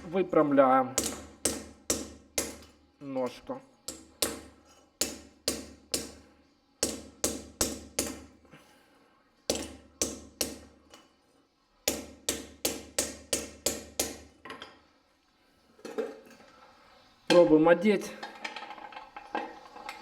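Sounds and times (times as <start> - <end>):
hammer striking metal: 1.0 - 2.7.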